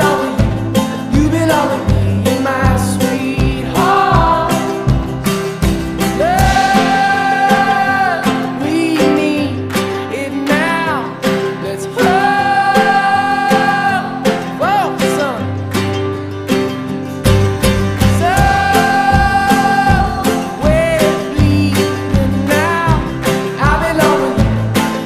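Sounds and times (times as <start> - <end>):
strummed guitar: 0.0 - 25.0
person singing long notes: 6.2 - 11.0, 11.9 - 15.0, 18.2 - 24.4.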